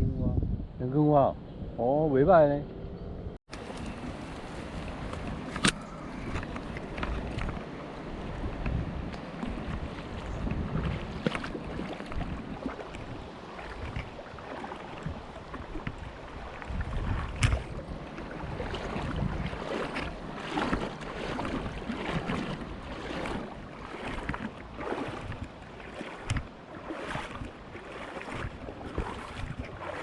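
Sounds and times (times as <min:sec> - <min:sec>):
wind buffeting microphone: 0:00.0 - 0:30.0
creek water splashing over rocks: 0:03.5 - 0:30.0.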